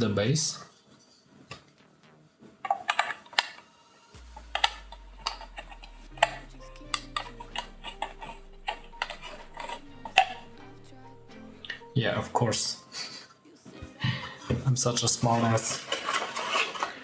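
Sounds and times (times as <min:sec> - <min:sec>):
background music with bass note: 0:01.7 - 0:13.0.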